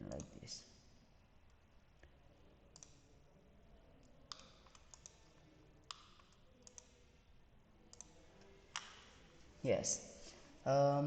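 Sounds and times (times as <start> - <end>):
faint room hiss: 0.0 - 11.0
computer mouse clicks: 1.5 - 3.1, 4.0 - 7.1, 7.9 - 9.2.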